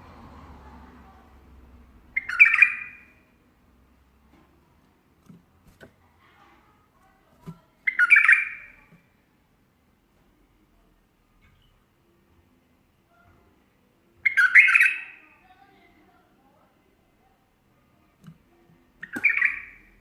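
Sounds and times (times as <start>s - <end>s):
bird harsh calls: 2.2s - 3.1s, 7.9s - 8.9s, 14.2s - 15.2s, 19.0s - 20.0s.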